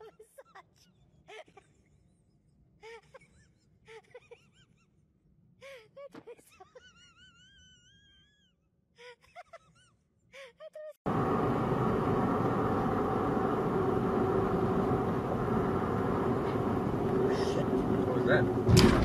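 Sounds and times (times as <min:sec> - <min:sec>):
vehicle and road noise: 0:11.1 - 0:19.0.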